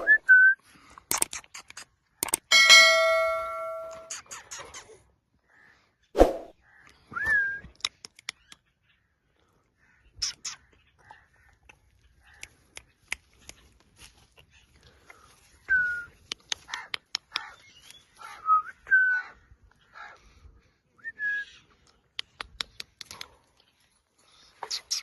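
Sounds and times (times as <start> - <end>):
parrot sharp clicks: 16.3 - 17.5.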